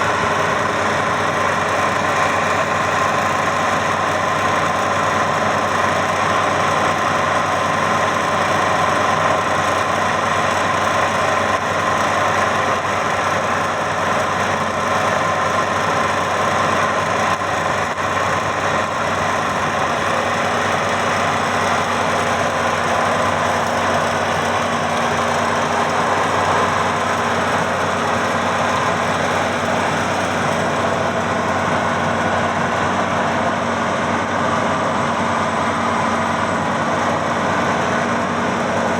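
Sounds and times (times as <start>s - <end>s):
combine harvester engine whining: 0.0s - 38.9s.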